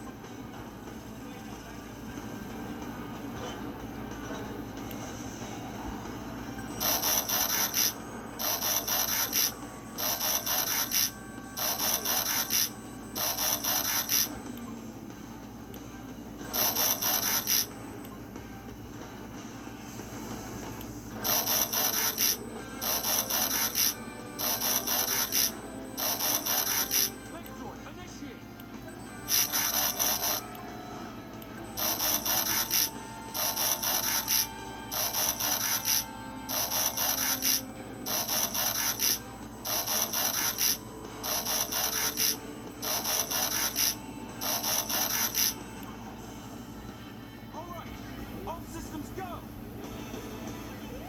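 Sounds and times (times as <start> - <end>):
rasping whirring mechanical bursts: 6.7 - 14.7, 16.4 - 18.0, 20.4 - 27.5, 29.0 - 45.9.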